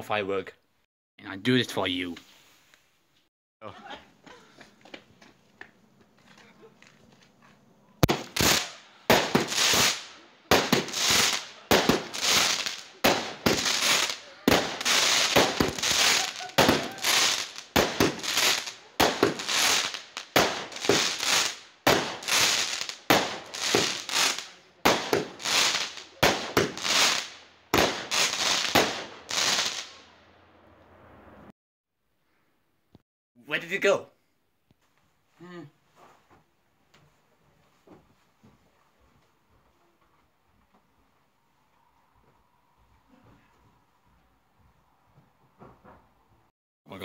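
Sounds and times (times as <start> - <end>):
fireworks bangs with crackle: 8.0 - 30.1.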